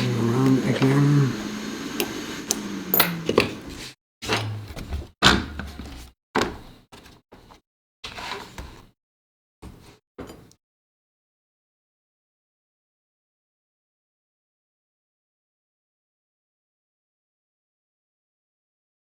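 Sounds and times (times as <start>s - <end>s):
small tools clattering on workbench: 2.9s - 3.6s.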